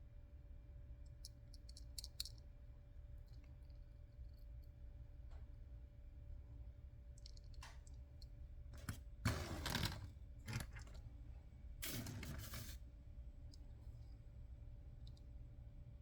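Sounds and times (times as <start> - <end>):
light clicks and taps of toys: 1.1 - 2.4.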